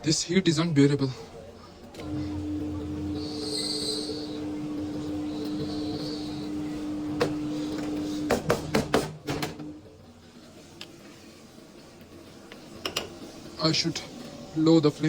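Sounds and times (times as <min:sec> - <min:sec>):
steady hum: 0:01.2 - 0:10.8.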